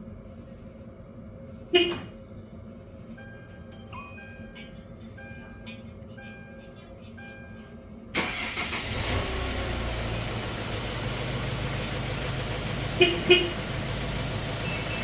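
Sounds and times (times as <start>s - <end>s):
van engine cranking and idling: 8.1s - 15.0s.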